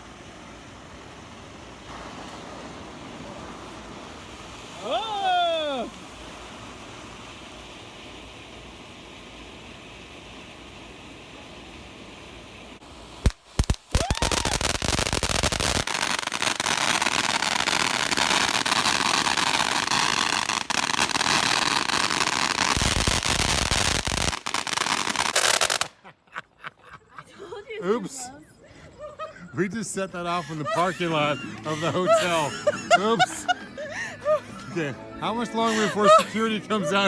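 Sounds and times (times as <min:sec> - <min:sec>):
firework hissing: 0:00.0 - 0:26.0, 0:29.8 - 0:34.3
firework pops and crackling: 0:13.2 - 0:26.0.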